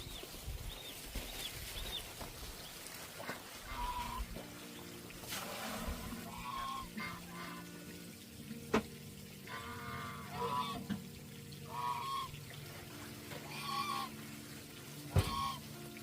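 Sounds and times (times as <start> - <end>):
geese honking: 3.2 - 4.4, 6.2 - 7.8, 9.4 - 11.0, 11.6 - 12.4, 13.3 - 14.3, 15.1 - 15.8.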